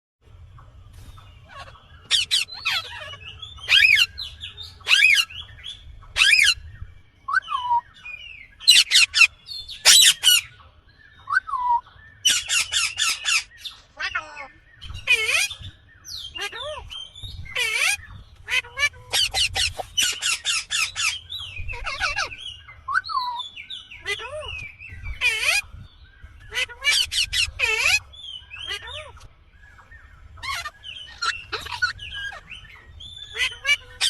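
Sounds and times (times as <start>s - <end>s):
parrot squawking: 1.4s - 4.1s, 4.8s - 5.2s, 8.7s - 10.5s, 11.6s - 15.6s, 17.5s - 23.4s, 24.0s - 25.6s, 26.5s - 29.2s, 30.4s - 34.0s.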